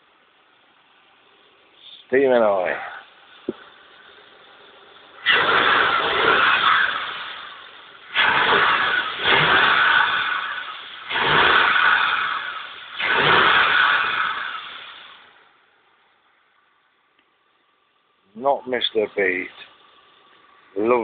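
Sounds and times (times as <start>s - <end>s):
engine revving: 5.2s - 15.2s.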